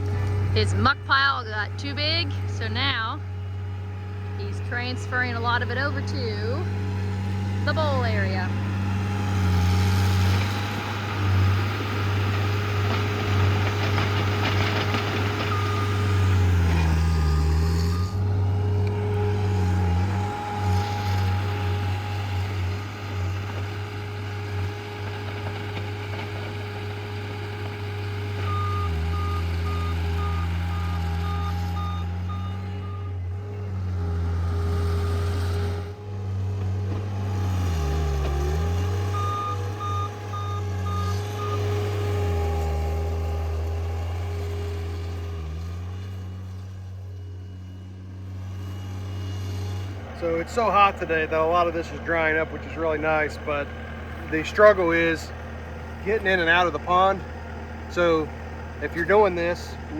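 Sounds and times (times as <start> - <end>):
diesel engine under load: 0.0 - 59.9
backup alarm beeping: 28.4 - 33.1, 39.2 - 41.6.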